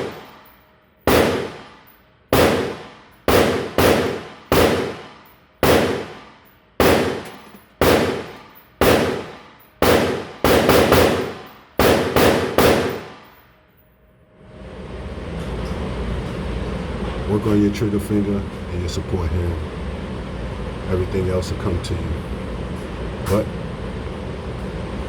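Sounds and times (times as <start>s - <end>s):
pistol shots with echo: 0.0s - 0.5s, 1.1s - 13.4s.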